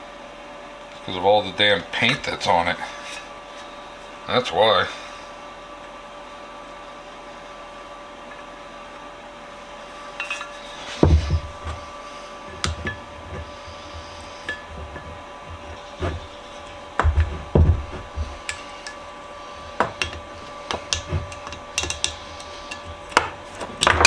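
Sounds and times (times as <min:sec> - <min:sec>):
faint background hum: 0:00.0 - 0:24.0
heavy thuds: 0:10.8 - 0:24.0
sharp metal knocks: 0:12.5 - 0:24.0.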